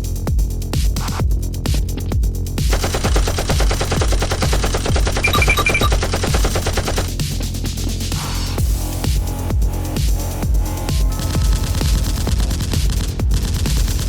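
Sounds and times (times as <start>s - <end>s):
rapid-fire gunshots: 2.7s - 7.2s.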